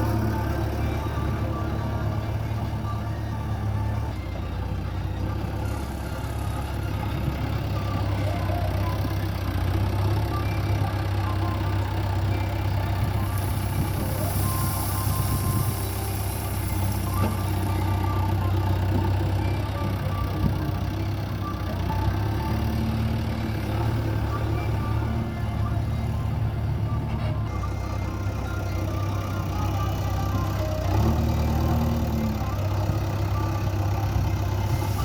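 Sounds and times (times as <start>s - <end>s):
diesel engine droning: 0.0s - 35.0s
hiss: 13.5s - 17.6s, 34.7s - 35.0s.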